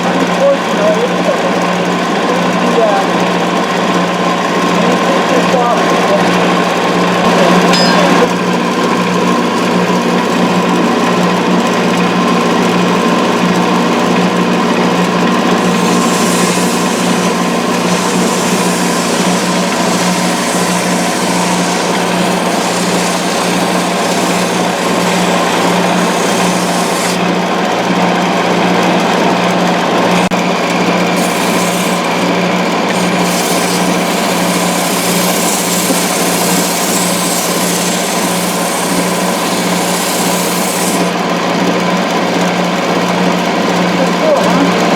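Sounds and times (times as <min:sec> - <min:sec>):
wood lathe motor hum: 0:00.0 - 0:44.9
turning tool cutting wood: 0:01.9 - 0:42.7.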